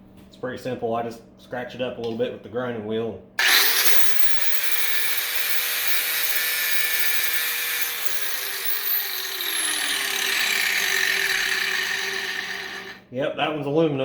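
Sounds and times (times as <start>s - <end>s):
electric grinder grinding metal wire: 3.4s - 13.0s.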